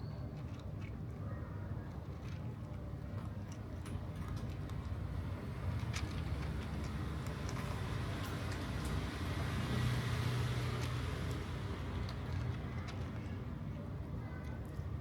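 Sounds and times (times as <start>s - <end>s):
road traffic rumble: 0.6s - 15.0s
vehicle passing by: 5.8s - 13.0s.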